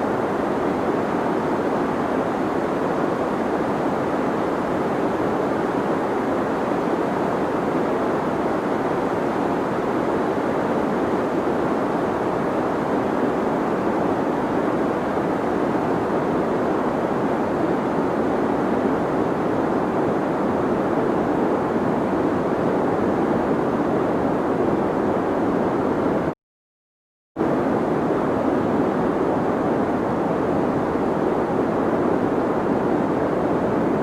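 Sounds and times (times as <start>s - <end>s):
deep white noise hiss: 0.0s - 26.3s.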